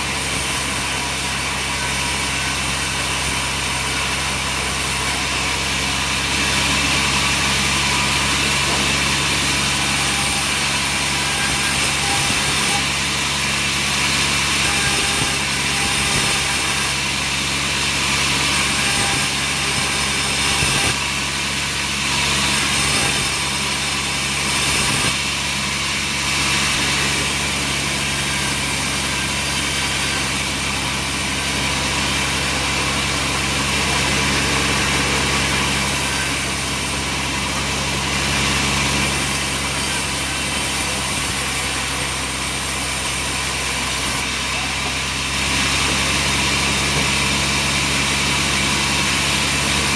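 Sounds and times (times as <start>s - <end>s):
sawmill machinery humming: 0.0s - 49.9s.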